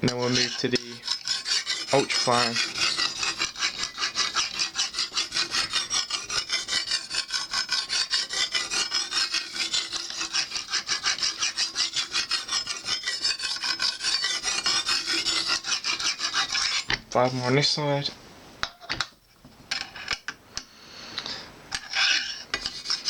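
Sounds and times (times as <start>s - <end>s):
hone rasping along knife blade: 0.0s - 17.0s, 21.7s - 23.0s.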